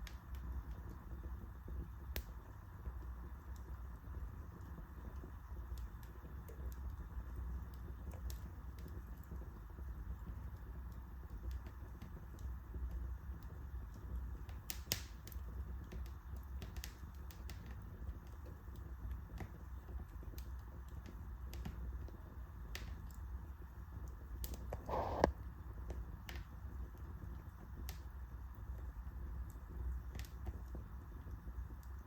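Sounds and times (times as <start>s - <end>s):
wood fire crackling: 0.0s - 32.0s
fire hiss: 24.4s - 25.5s.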